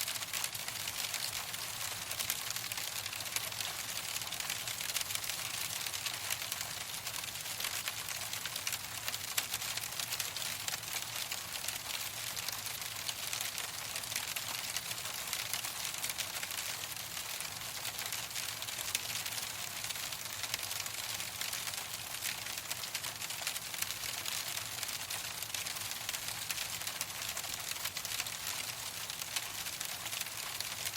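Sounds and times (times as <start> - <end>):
hailstones on hard surface: 9.2 - 30.9.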